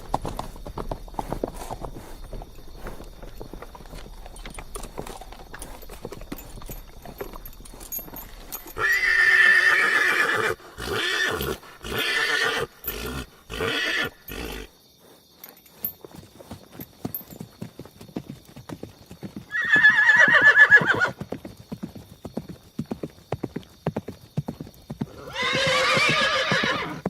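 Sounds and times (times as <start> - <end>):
horse hooves clip-clopping: 0.0 - 27.0
horse whinnying: 7.3 - 14.7, 19.5 - 21.2, 25.1 - 27.0.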